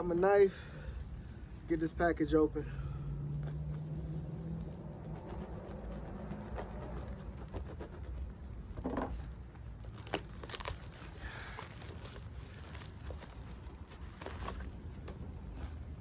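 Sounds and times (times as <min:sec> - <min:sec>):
knife cutting package: 0:04.9 - 0:15.9
packaging tearing and crinkling: 0:08.7 - 0:16.0.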